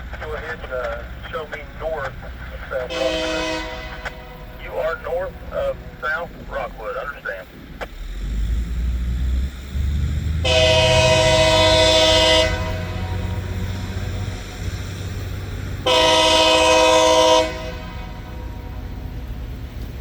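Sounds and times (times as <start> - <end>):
low engine rumble: 0.0 - 20.0
multi-chime air horn blasts: 2.9 - 4.5.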